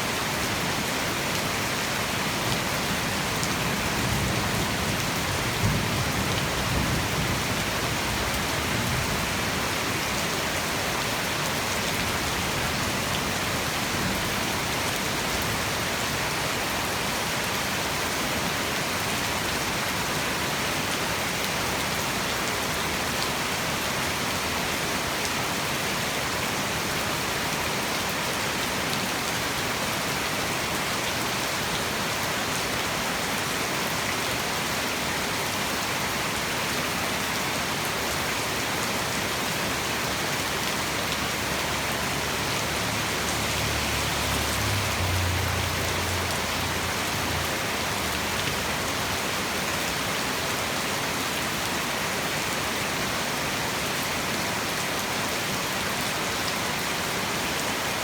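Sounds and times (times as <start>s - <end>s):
heavy rain hiss: 35.7s - 56.3s.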